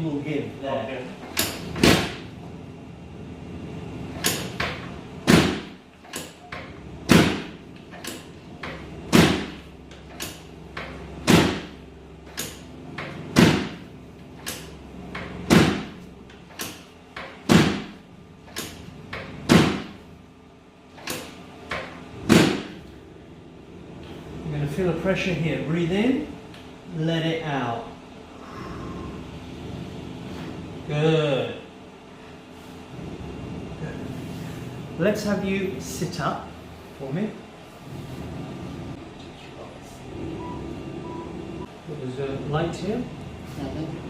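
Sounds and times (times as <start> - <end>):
treatment table dropping with clack: 1.3 - 2.2, 4.2 - 13.8, 14.4 - 20.0, 21.0 - 22.8.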